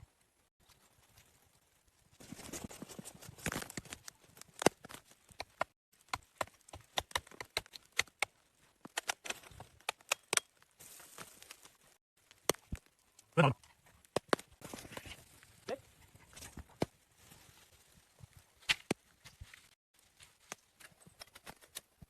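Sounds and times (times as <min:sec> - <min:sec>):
sharp knocks and cracks: 0:04.6 - 0:10.6.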